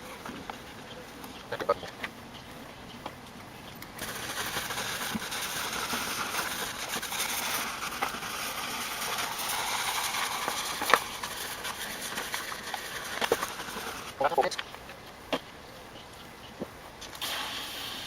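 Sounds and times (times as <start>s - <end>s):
hose nozzle spraying water: 3.8s - 14.6s, 17.0s - 18.0s.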